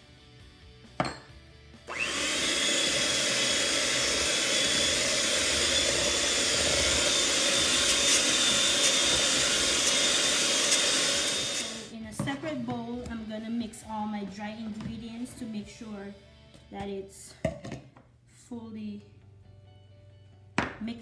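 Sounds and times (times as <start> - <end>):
electric hand mixer running: 1.9 - 12.0.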